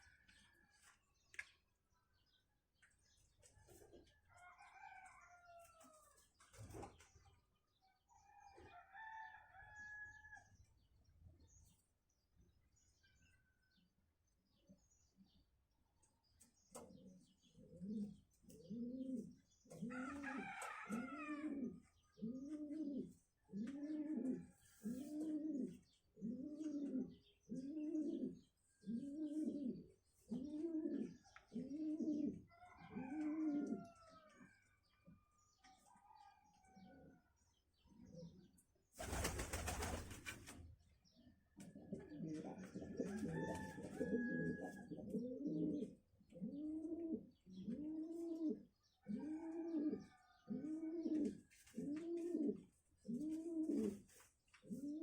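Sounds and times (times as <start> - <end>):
dove cooing: 17.6 - 34.0, 41.8 - 55.0.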